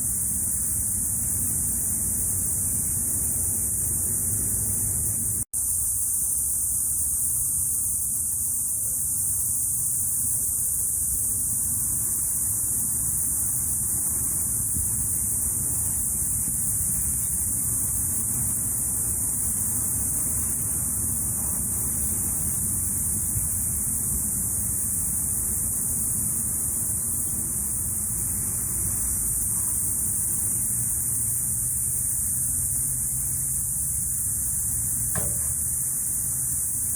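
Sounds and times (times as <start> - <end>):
low steady rumble: 0.0 - 5.5
cicadas buzzing: 0.0 - 36.9.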